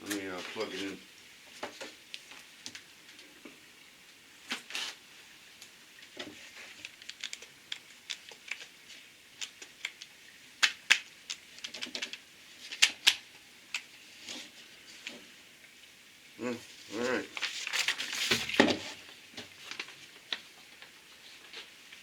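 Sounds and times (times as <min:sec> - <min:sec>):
jigsaw clicks and taps: 0:06.8 - 0:08.7.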